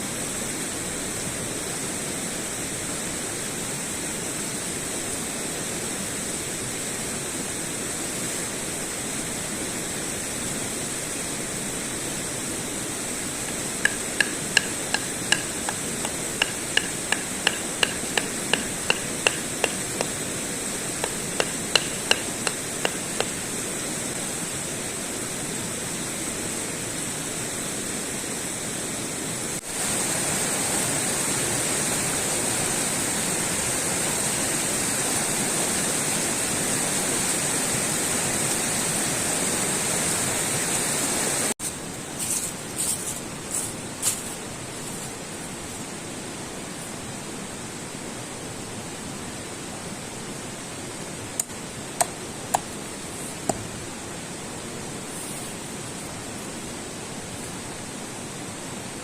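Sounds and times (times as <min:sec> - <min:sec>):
hammer blows ringing: 0:13.5 - 0:20.2, 0:21.0 - 0:23.4.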